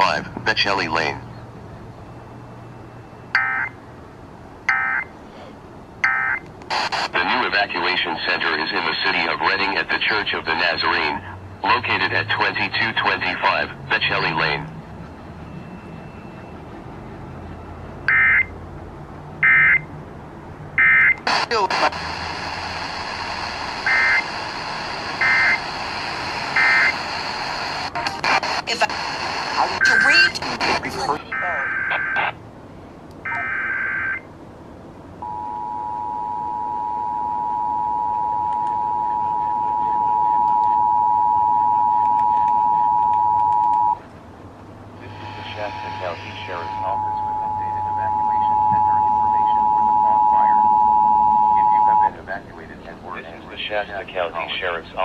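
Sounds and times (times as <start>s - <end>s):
faint broadcast hiss and hum: 3.4s - 14.8s, 21.1s - 55.0s
two-tone attention signal: 35.2s - 44.0s, 45.6s - 52.1s
buzzy data tone: 45.0s - 52.1s.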